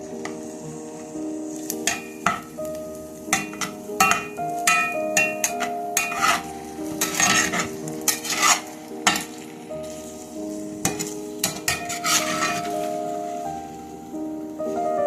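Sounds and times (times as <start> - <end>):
food sizzling: 0.0 - 15.0
utensil scraping a frying pan: 1.8 - 2.5, 3.3 - 13.4.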